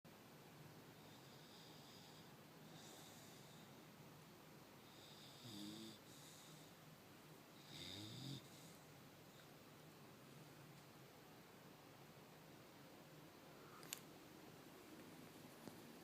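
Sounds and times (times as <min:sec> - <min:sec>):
puppy snoring: 0:01.0 - 0:03.8, 0:04.8 - 0:06.8, 0:07.6 - 0:08.9.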